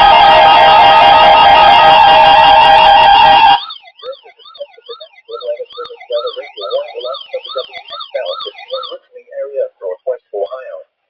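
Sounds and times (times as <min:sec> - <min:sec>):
warbling electronic alarm tone: 0:00.0 - 0:09.1
choppy low tones: 0:03.6 - 0:10.8.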